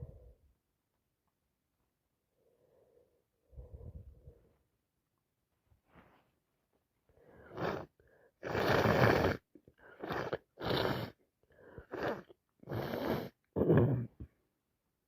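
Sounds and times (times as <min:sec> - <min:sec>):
person blowing nose: 0:07.5 - 0:09.4, 0:10.0 - 0:11.2, 0:11.9 - 0:14.1.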